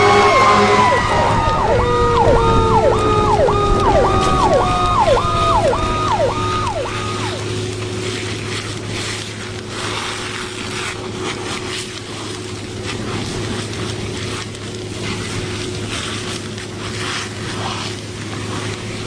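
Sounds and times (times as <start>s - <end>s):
hissing and crackling: 0.0s - 19.0s
machine drone: 0.0s - 19.0s.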